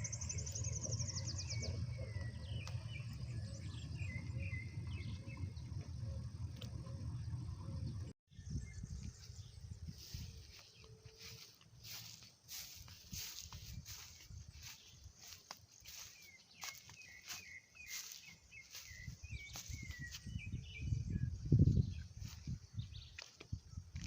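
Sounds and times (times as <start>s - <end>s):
low steady rumble: 0.0s - 22.8s
birds chirping: 0.0s - 24.0s
high rapid bird trill: 10.0s - 20.2s.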